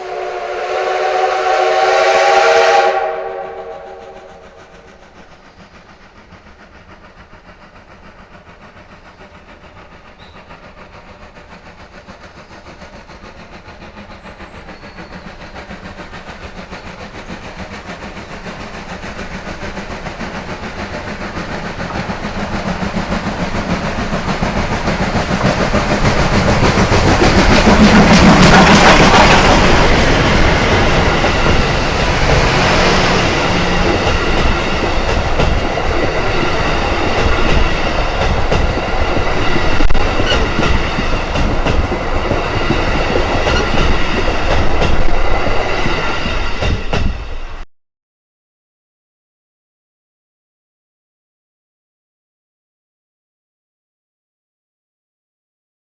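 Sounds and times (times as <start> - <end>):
steam locomotive passing: 0.0 - 47.7
train wheels clattering over rail joints: 4.4 - 47.6.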